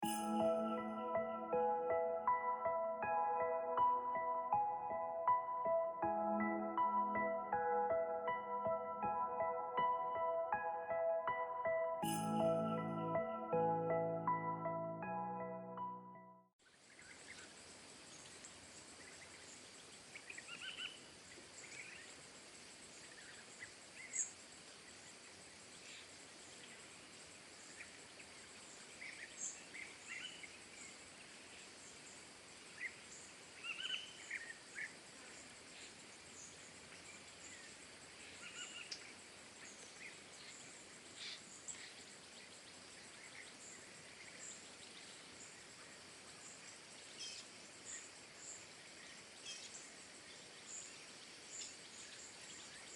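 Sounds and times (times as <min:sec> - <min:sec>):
steady background hiss: 0:16.8 - 0:52.9.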